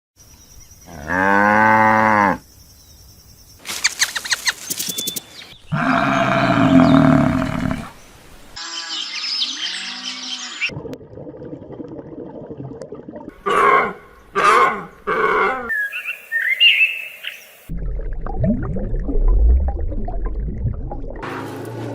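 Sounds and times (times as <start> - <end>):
cow mooing: 0.9 - 2.4, 5.7 - 7.9, 13.4 - 15.7
animal clicking and chirping: 3.7 - 5.4
high chirps: 3.7 - 5.6
loud rough animal call: 5.7 - 8.0, 13.4 - 15.7.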